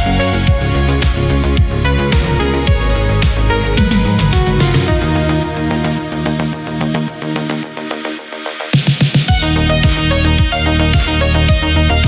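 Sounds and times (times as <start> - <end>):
kick drum: 0.0 - 5.2, 8.8 - 11.7
deep synth bass: 0.0 - 8.6, 9.3 - 12.0
retrowave synth music: 0.0 - 12.0
drum fill: 1.6 - 5.8.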